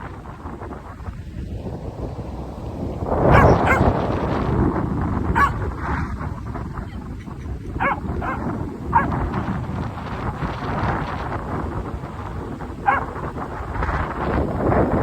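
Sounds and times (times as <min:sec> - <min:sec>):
wind buffeting microphone: 0:00.0 - 0:15.0
dog barking: 0:03.3 - 0:04.0, 0:05.3 - 0:05.7, 0:07.7 - 0:09.3, 0:12.8 - 0:13.2.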